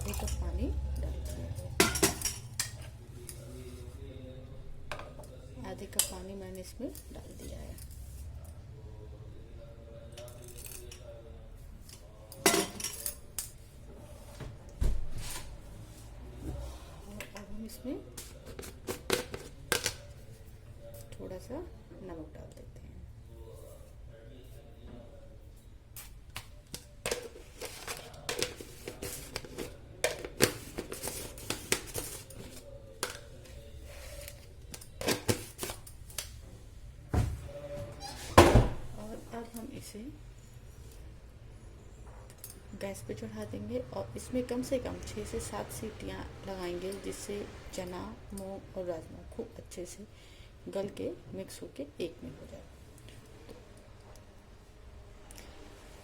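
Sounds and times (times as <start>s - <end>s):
kitchen utensils clattering: 0.0s - 0.6s, 1.2s - 2.9s, 12.4s - 13.4s.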